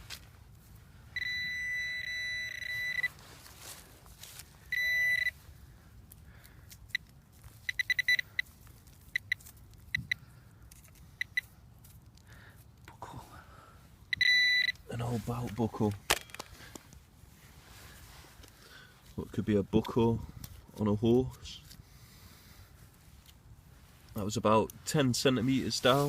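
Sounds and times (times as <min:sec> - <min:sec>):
metal detector beeps: 0:01.1 - 0:03.2, 0:04.6 - 0:05.4, 0:06.9 - 0:10.3, 0:11.2 - 0:11.5, 0:14.1 - 0:15.0.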